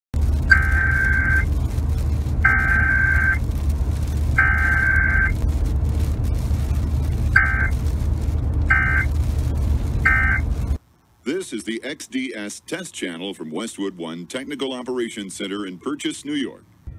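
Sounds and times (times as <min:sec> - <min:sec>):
low hum and hiss: 0:00.2 - 0:16.9
high electronic beeps: 0:00.4 - 0:01.7, 0:02.4 - 0:03.4, 0:04.2 - 0:05.6, 0:06.2 - 0:07.8, 0:08.7 - 0:09.2, 0:09.8 - 0:10.8.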